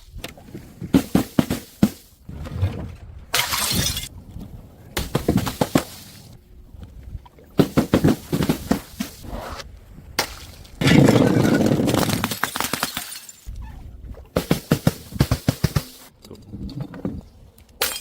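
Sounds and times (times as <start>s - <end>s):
glass bottles smashing: 3.4s - 4.1s, 10.8s - 13.5s, 17.8s - 18.0s.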